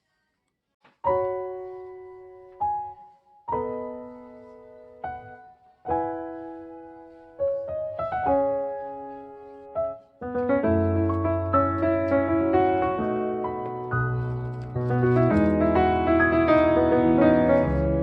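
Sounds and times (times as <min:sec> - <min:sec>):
slow piano chords: 0:01.1 - 0:18.0.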